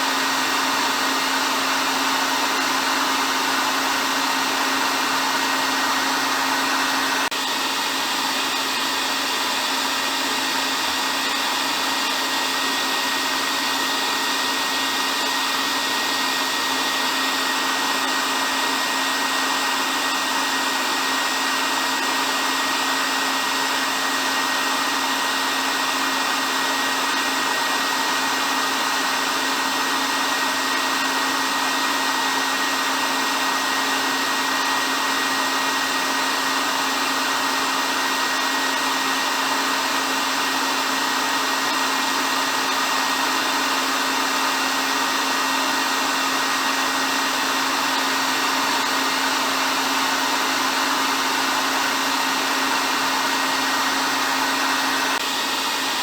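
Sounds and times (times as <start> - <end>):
hair dryer blowing: 0.0 - 56.0.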